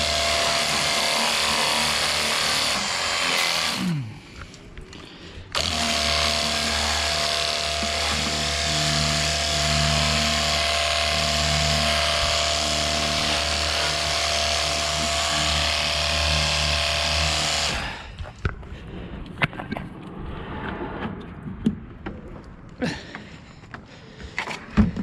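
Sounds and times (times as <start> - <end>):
pressure washer motor humming: 0.0 - 3.9, 5.5 - 18.1.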